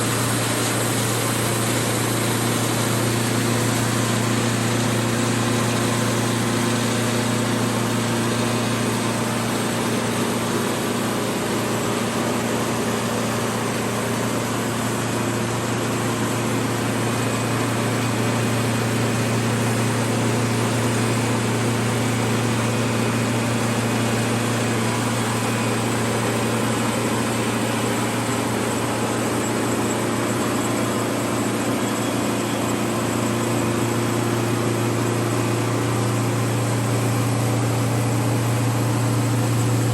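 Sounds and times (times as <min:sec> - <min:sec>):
engine running steadily: 0:00.0 - 0:39.9.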